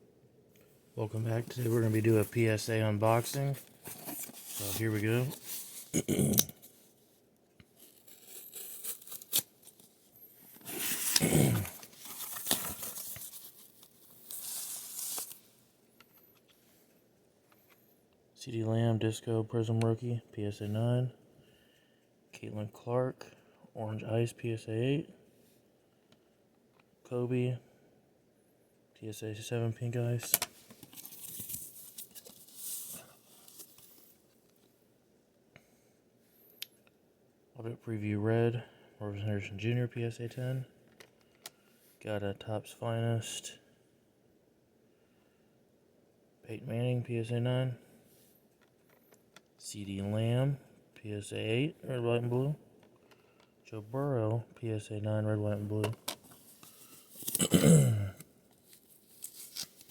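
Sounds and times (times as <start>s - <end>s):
packaging tearing and rustling: 3.2s - 6.2s, 7.8s - 15.5s, 30.8s - 34.0s, 58.6s - 59.9s.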